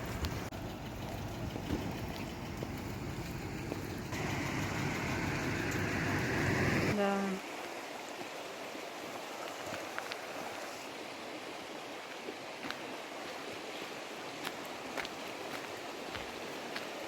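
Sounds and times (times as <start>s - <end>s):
stream water rushing: 0.0s - 17.0s
loud rumbling noise: 1.3s - 7.0s.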